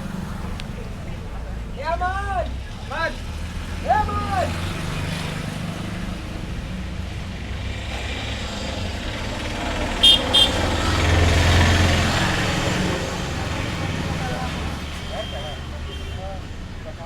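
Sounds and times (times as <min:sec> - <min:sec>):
vehicle engine rumble: 0:00.0 - 0:17.0
vehicle horn toots: 0:09.9 - 0:11.0.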